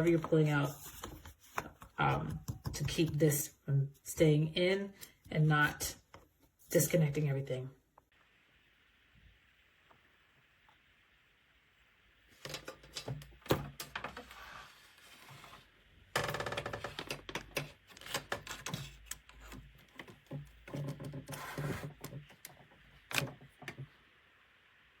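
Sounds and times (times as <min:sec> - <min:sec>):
cable plugs clicking and clattering: 0:12.4 - 0:14.2, 0:16.2 - 0:23.8.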